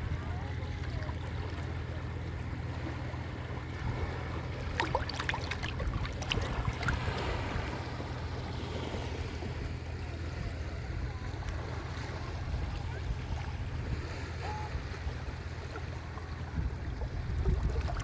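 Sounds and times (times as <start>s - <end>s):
small waves washing on a beach: 0.0s - 18.0s
steady low rumble: 0.0s - 18.0s
sharp splashes: 4.0s - 8.1s.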